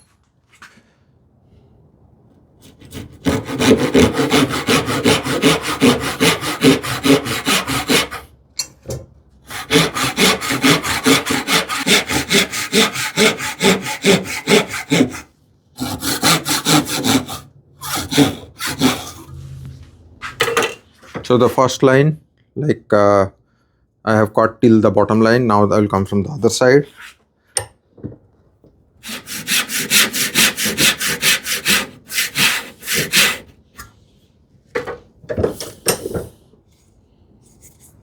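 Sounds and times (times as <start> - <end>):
hand saw cutting wood: 2.6 - 8.3, 9.4 - 19.4, 29.0 - 33.6.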